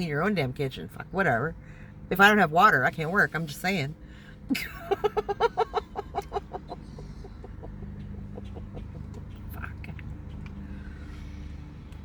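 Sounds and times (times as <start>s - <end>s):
steady low hum: 0.2s - 12.0s
woman laughing: 4.5s - 9.3s.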